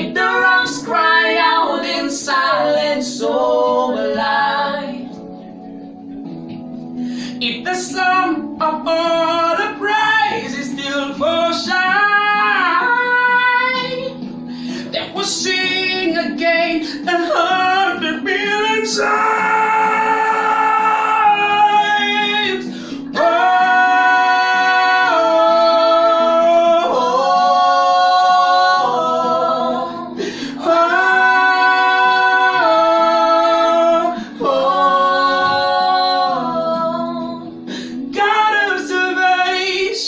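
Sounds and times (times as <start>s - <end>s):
guitar accompaniment: 0.0s - 40.0s
person singing long held notes: 16.7s - 40.0s.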